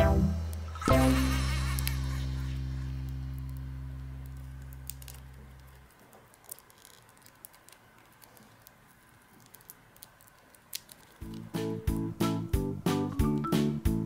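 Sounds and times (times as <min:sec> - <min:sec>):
low buzzing note: 0:00.0 - 0:05.8
hands handling plastic toys: 0:04.3 - 0:11.6.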